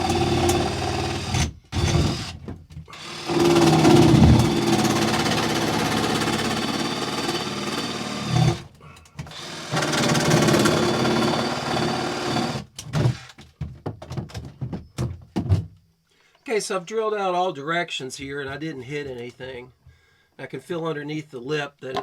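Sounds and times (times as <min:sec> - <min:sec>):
power drill drilling fiberglass: 0:00.0 - 0:08.7, 0:09.3 - 0:13.3.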